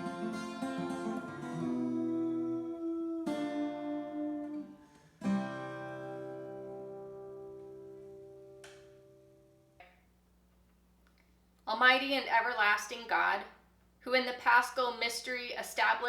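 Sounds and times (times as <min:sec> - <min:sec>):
acoustic guitar chords: 0:00.0 - 0:09.8.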